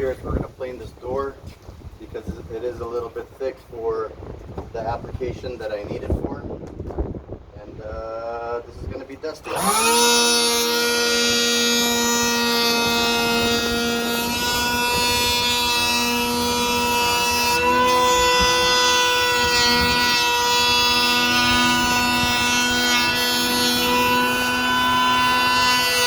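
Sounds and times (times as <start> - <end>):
electric planer whining on wood: 9.4 - 26.0.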